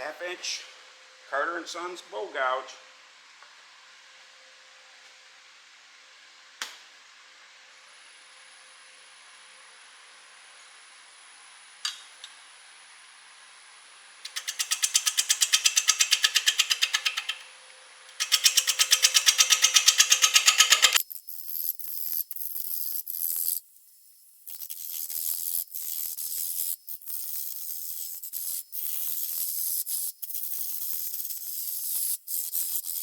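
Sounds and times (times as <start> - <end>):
gouge cutting wood rhythmically: 14.3 - 17.4, 18.1 - 21.0
hissy scraping: 14.3 - 17.5
wood lathe humming: 14.3 - 17.5, 18.1 - 21.0.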